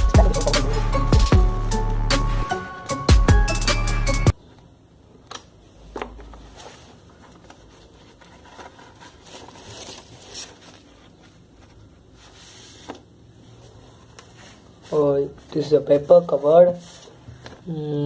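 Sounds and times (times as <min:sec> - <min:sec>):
package rustling and scraping: 0:06.1 - 0:15.7.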